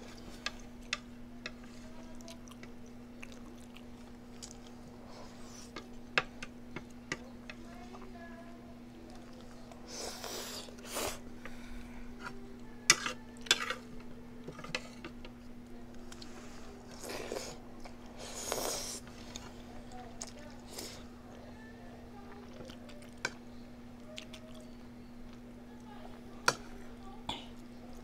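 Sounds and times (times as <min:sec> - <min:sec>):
eating noises: 0:00.0 - 0:06.0, 0:24.0 - 0:25.5
faint hum: 0:00.0 - 0:28.0.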